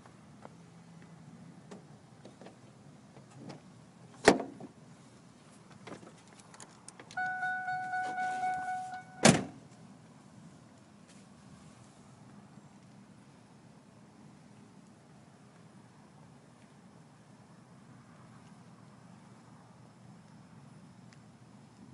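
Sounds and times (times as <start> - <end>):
car door thudding shut: 4.2 - 4.7, 9.1 - 9.6
car warning chime dinging: 7.2 - 9.3.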